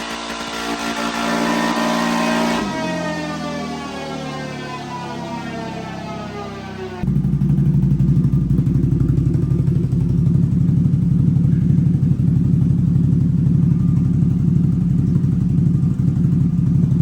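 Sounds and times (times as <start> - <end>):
engine running: 0.0 - 17.0.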